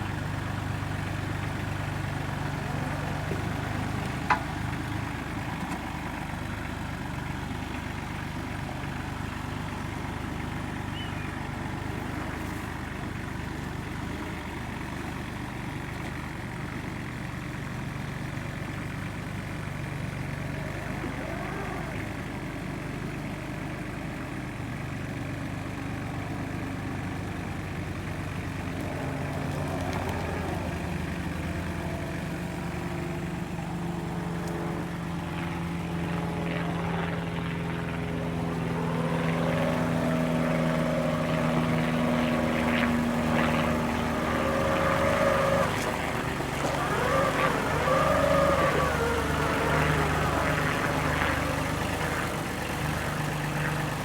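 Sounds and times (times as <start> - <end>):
vehicle engine running: 0.0 - 54.0
wavering machine whine: 28.7 - 54.0.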